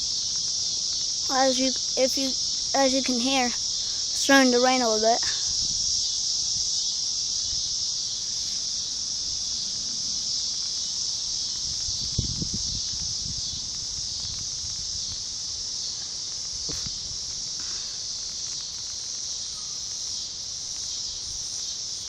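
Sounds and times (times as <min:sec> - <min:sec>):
insect chorus chirring: 0:00.0 - 0:22.0
light rain falling: 0:13.0 - 0:22.0.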